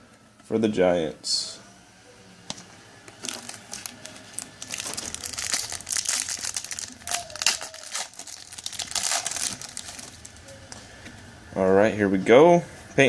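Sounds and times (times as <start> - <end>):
wrapper tearing and crinkling: 3.2 - 10.5.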